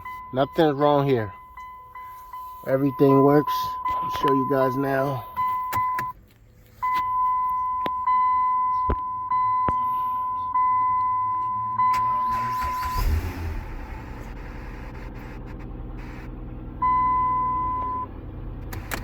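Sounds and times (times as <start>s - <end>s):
dashboard warning chime: 0.0s - 6.2s, 6.8s - 13.3s, 16.8s - 18.1s
car engine cranking and starting: 0.0s - 9.7s, 10.6s - 19.0s
car engine idling: 0.0s - 19.0s.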